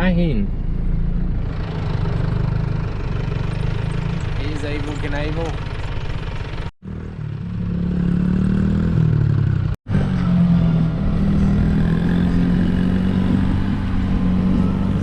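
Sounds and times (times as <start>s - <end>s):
vehicle engine running: 0.5s - 7.8s.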